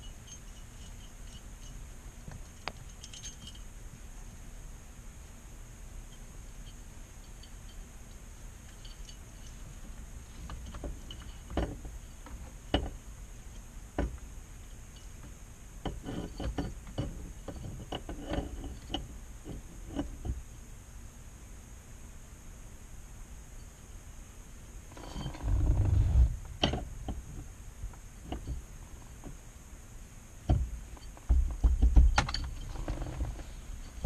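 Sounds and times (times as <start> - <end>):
light clicks and knocks of parts: 0.0 - 4.4, 6.1 - 20.4, 24.9 - 29.4, 30.4 - 34.0
faint background hum: 0.0 - 34.0.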